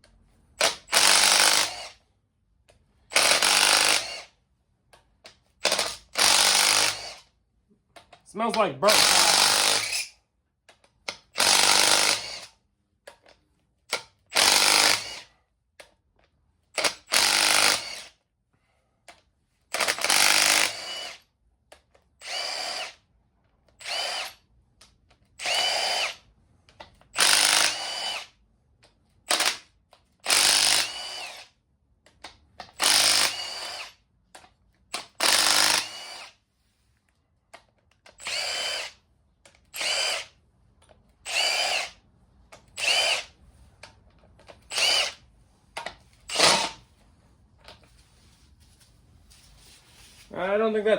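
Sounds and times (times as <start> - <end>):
power tool bursts: 8.8 - 10.1, 35.2 - 36.3, 46.3 - 46.8.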